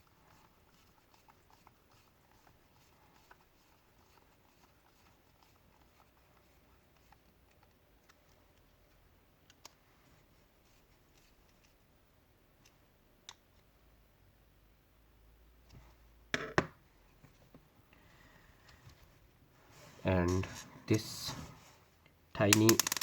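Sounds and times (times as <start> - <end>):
plastic housing clicks and taps: 22.4 - 23.0.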